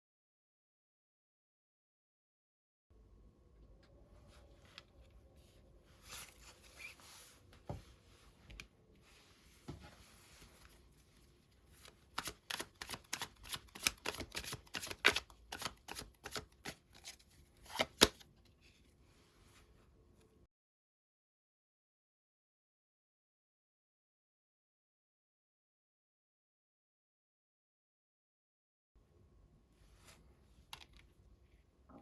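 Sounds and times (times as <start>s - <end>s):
cards being shuffled: 11.7s - 18.3s.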